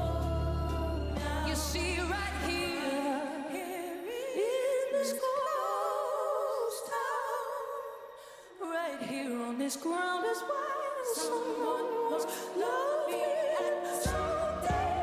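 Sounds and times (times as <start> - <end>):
low accompaniment: 0.0 - 2.7
woman singing ballad with vibrato: 0.0 - 15.0.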